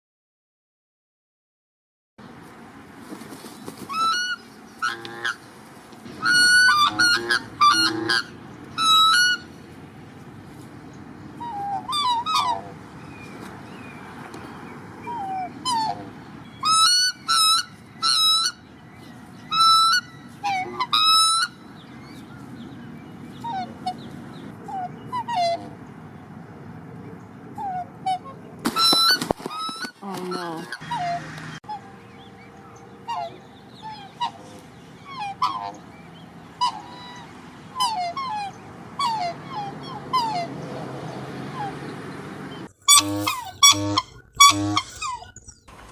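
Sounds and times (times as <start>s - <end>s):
swans honking: 3.8s - 10.4s, 11.3s - 14.0s, 15.0s - 25.9s, 27.6s - 45.9s
softer lower swan calls: 6.1s - 9.5s, 11.4s - 12.8s, 32.7s - 35.9s, 36.5s - 40.5s, 42.9s - 45.4s.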